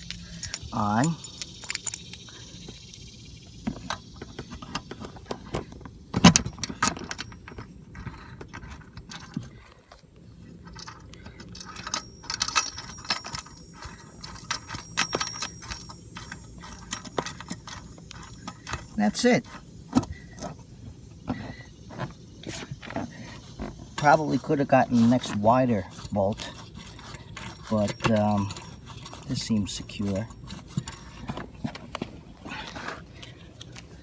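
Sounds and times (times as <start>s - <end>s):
metal hardware clinking: 0.0s - 3.0s, 3.6s - 9.7s, 10.6s - 20.6s, 23.8s - 32.0s.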